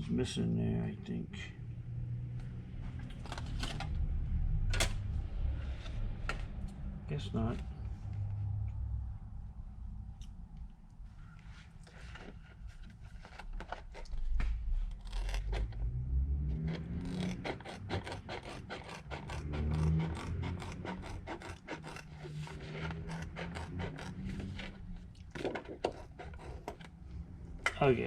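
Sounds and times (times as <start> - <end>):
low hum: 0.8 - 11.9.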